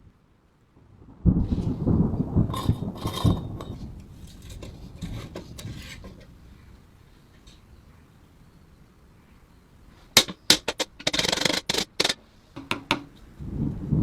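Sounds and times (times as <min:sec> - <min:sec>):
rubbing or scraping: 0:02.5 - 0:06.4, 0:10.0 - 0:12.2
hard object knocking and clattering: 0:10.2 - 0:13.2.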